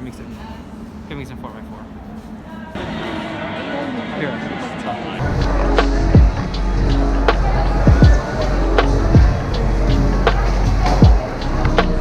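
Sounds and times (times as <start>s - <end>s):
deep bass sweep: 5.2s - 12.0s
music with heavy bass: 5.2s - 12.0s
sharp percussion hits: 5.2s - 12.0s.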